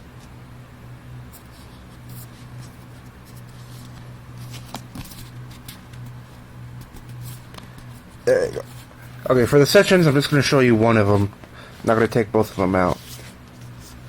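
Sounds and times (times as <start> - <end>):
cardboard packaging rustling: 1.7 - 6.2.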